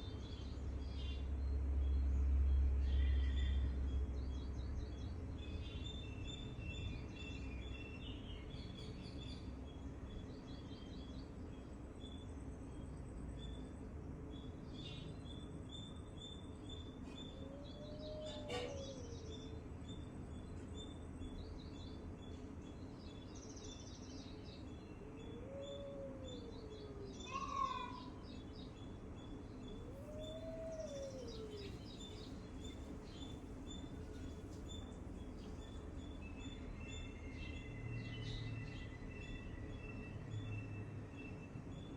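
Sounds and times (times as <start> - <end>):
low rising and falling bird call: 17.2 - 19.5, 25.1 - 28.2, 29.8 - 34.4
low background hiss: 28.3 - 36.6
bird chirping and trilling: 29.6 - 35.8.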